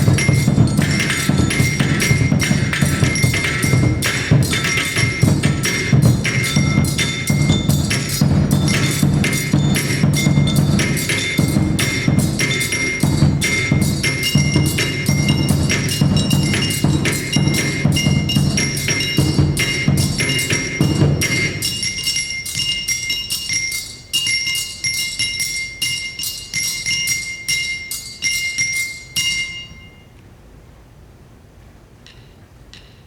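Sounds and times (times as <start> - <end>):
low drums: 0.0 - 22.9
pitched metal percussion strikes: 0.0 - 30.2.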